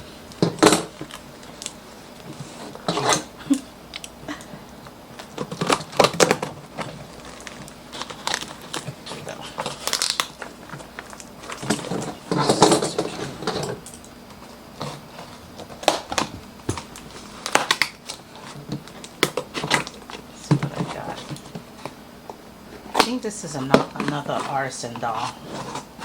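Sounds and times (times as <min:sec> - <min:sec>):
packaging crinkling and rustling: 0:00.3 - 0:26.0.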